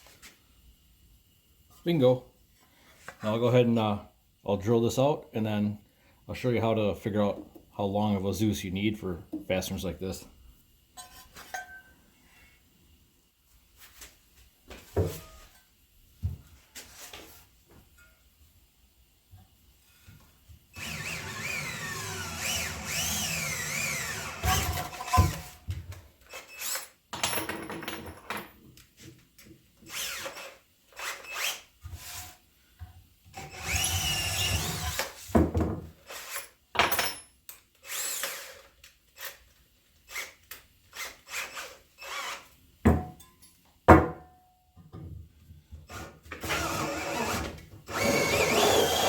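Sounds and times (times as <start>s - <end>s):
power drill whining: 20.8s - 25.4s, 33.4s - 35.0s, 45.9s - 49.0s.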